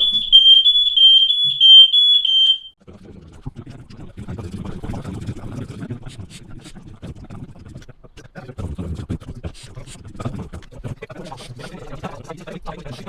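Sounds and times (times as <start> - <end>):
smoke alarm beep: 0.0 - 2.8
sped-up garbled speech: 2.8 - 13.0.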